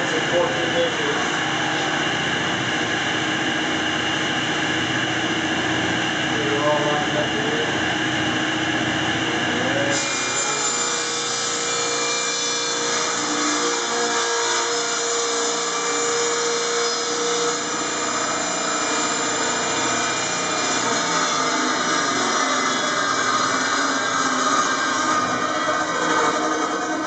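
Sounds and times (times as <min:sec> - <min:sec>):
table saw ripping plywood: 0:09.9 - 0:27.0.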